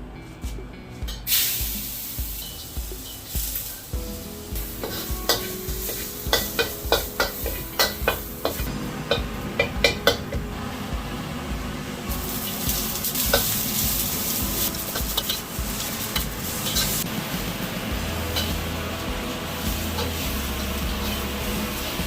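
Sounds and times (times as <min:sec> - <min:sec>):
food sizzling in a pan: 0:01.3 - 0:10.3, 0:12.0 - 0:22.0
utensil clinking against pan: 0:04.8 - 0:10.4.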